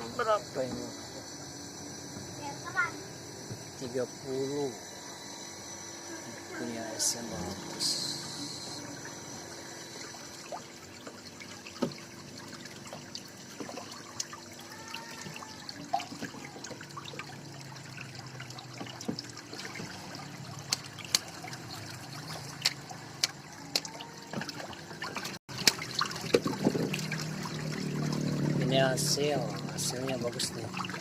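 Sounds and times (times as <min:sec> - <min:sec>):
refrigeration unit hum: 0:00.0 - 0:31.0
water trickling: 0:03.6 - 0:31.0.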